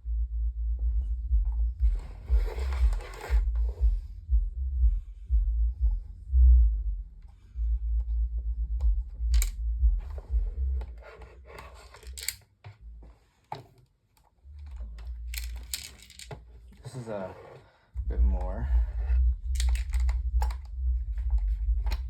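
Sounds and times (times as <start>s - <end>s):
low handling rumble: 0.0s - 13.0s, 14.5s - 16.3s, 18.0s - 22.0s.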